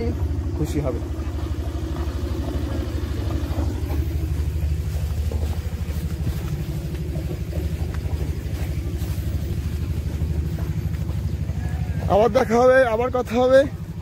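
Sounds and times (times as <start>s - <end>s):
small boat engine running: 0.0s - 14.0s.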